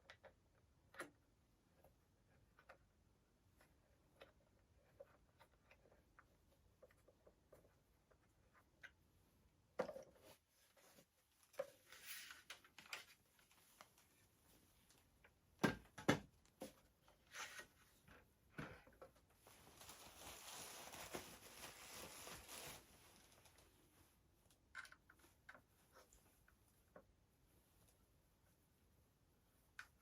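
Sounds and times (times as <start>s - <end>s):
rustling: 19.2s - 26.8s.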